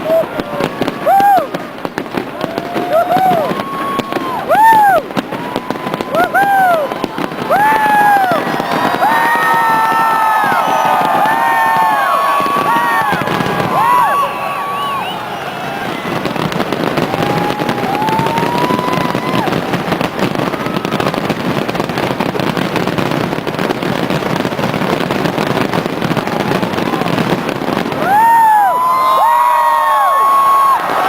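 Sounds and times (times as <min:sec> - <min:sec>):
person whooping: 0:00.0 - 0:01.5, 0:02.3 - 0:16.2, 0:17.0 - 0:21.2, 0:28.0 - 0:31.0
crowd voices: 0:00.0 - 0:21.8
fireworks crackling and popping: 0:00.0 - 0:31.0.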